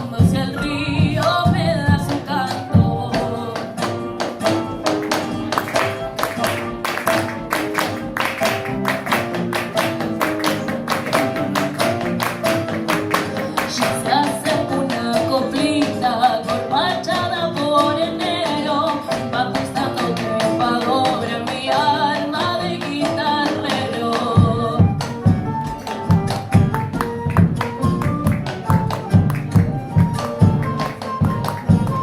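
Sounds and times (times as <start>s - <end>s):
heavy low drum beats: 0.0s - 2.2s.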